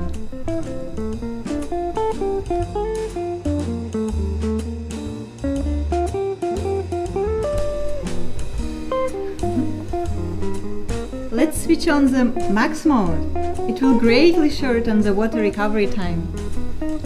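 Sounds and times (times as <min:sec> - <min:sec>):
plucked acoustic guitar: 0:00.0 - 0:02.6, 0:07.6 - 0:17.0
pulsing bass line: 0:00.0 - 0:02.6, 0:07.6 - 0:17.0.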